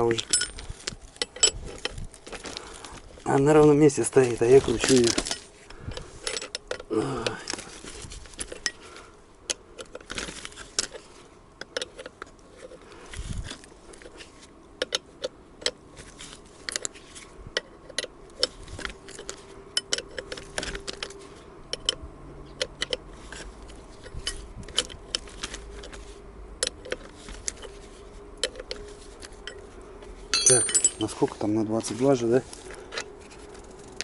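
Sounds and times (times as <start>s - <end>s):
wrench clicking and clinking: 30.4s - 31.1s.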